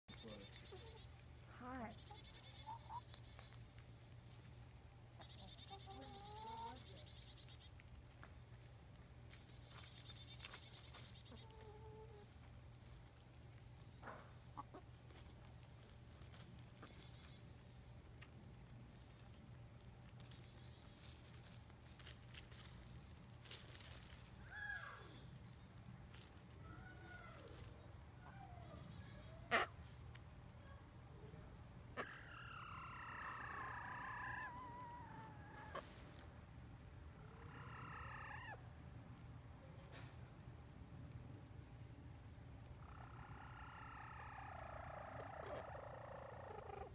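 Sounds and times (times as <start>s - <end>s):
chickens warbling softly: 5.2s - 7.2s, 26.7s - 30.0s, 32.0s - 36.2s, 37.2s - 38.6s, 42.8s - 46.9s.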